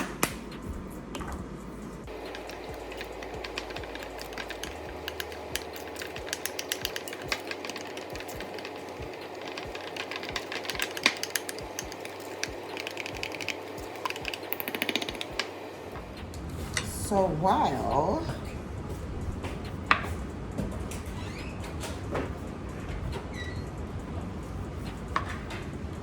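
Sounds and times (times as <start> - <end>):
spoon stirring sauce in bowl: 2.1 - 15.6.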